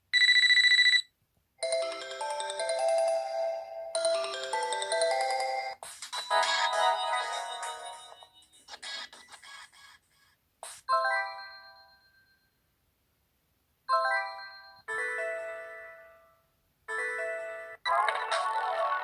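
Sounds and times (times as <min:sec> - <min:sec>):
phone ringtone tune: 0:00.2 - 0:08.6, 0:11.0 - 0:12.5, 0:13.9 - 0:16.3, 0:16.9 - 0:18.7.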